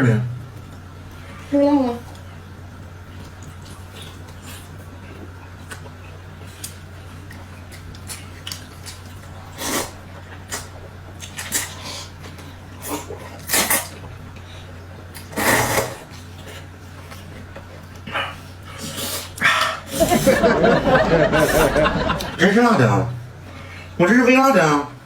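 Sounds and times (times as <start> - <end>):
low hum: 19.9 - 23.9.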